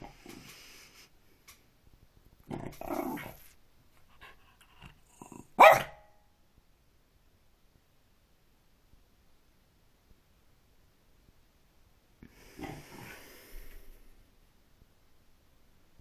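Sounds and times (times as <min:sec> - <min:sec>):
pet growling and hissing: 0:02.5 - 0:03.5, 0:12.2 - 0:14.2.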